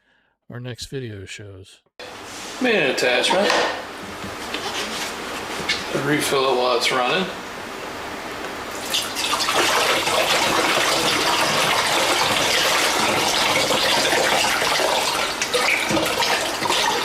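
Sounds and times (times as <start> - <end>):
water pouring through funnel: 8.8 - 17.0.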